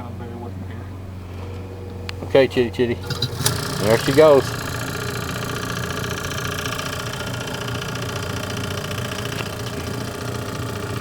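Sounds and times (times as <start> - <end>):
vacuum pump running: 1.3 - 11.0.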